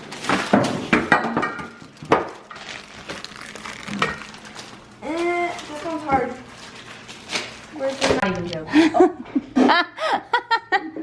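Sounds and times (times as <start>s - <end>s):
packaging crinkling: 0.0s - 1.0s, 1.8s - 8.6s.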